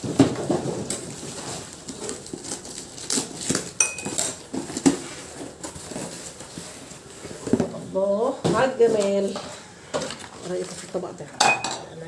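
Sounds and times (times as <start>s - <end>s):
dishes knocking and clinking: 3.8s - 4.3s, 11.4s - 11.9s.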